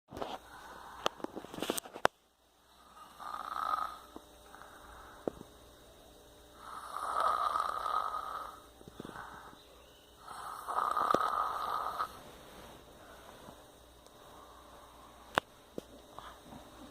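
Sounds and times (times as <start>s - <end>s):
person snoring: 2.7s - 5.2s, 6.6s - 9.6s, 10.2s - 12.2s.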